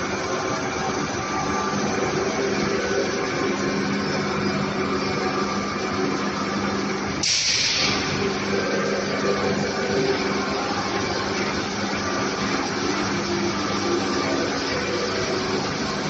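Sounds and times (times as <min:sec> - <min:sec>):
machinery drone: 0:00.0 - 0:16.0
loud hiss: 0:07.2 - 0:08.0.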